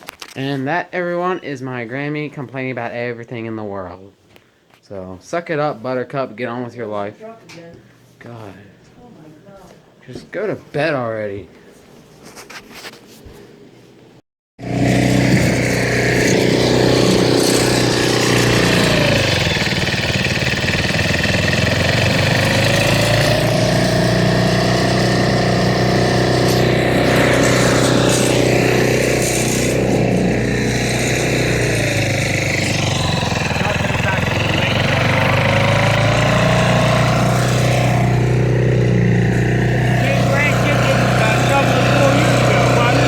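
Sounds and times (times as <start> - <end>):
engine running: 14.6 - 43.0.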